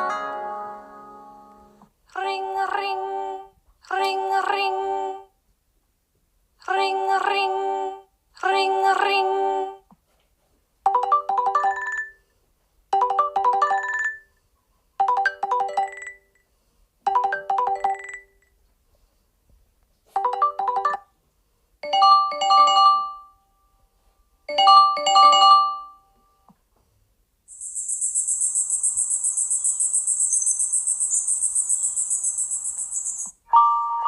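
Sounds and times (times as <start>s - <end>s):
phone ringtone chime: 10.9s - 12.2s, 13.0s - 14.3s, 15.0s - 16.4s, 17.1s - 18.5s, 20.2s - 21.1s, 21.8s - 23.4s, 24.5s - 26.1s.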